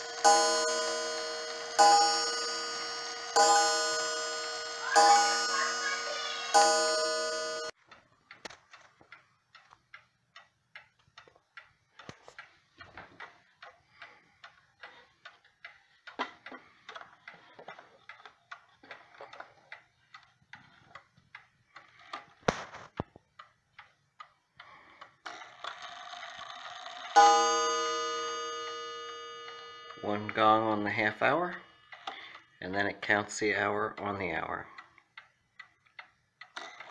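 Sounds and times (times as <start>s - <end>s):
clock ticking: 0.0s - 22.6s, 23.2s - 36.9s
clock mechanism whirring: 0.0s - 36.9s.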